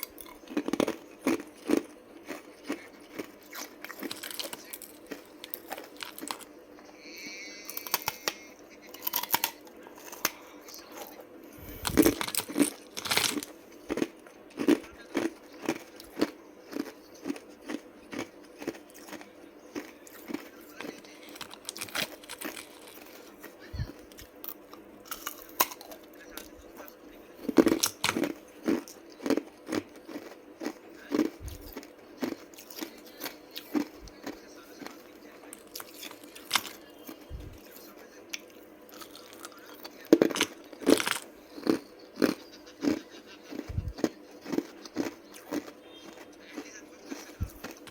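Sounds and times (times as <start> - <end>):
ice cubes being crunched: 0.0 - 6.4, 7.7 - 10.4, 11.8 - 23.2.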